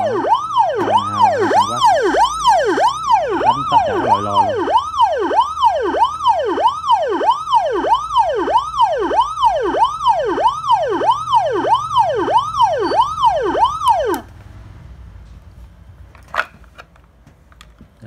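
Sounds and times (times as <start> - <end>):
motorbike siren yelping: 0.0 - 14.3.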